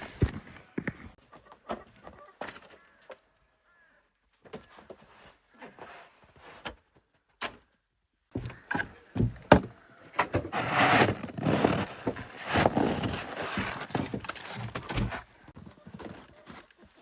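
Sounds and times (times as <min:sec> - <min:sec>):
wooden knocks and thuds: 0:08.3 - 0:10.5
rough scraping and rustling: 0:10.1 - 0:17.0.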